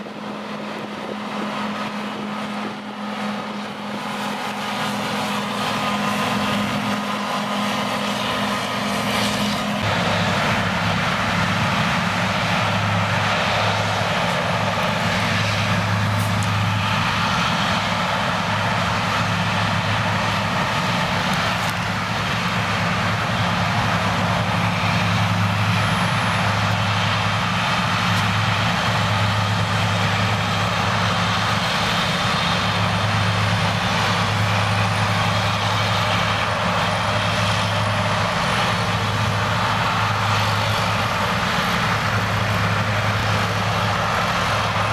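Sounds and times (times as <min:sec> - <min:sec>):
broad running noise: 0:00.0 - 0:44.9
engine-like hum: 0:00.0 - 0:44.9.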